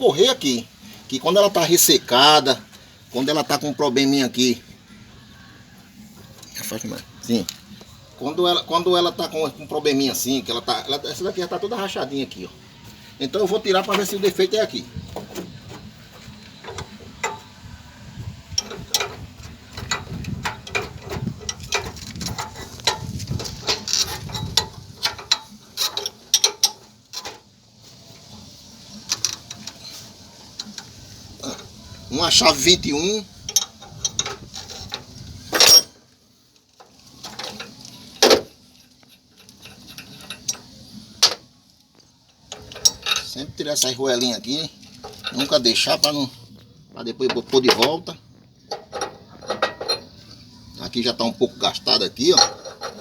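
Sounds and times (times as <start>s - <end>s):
metal tools clinking: 13.4s - 17.6s, 18.5s - 27.5s, 29.0s - 36.1s, 36.8s - 41.4s, 42.3s - 46.3s, 48.7s - 53.0s
ratchet wrench clicking: 29.1s - 29.9s.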